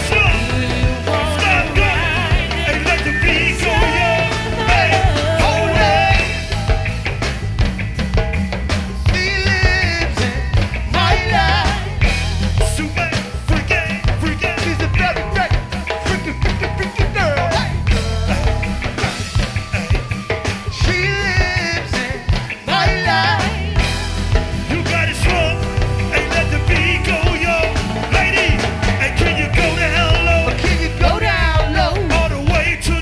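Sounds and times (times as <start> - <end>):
wavering lead voice or horn: 0.0 - 6.8, 12.8 - 32.4
live band upbeat groove: 0.0 - 33.0.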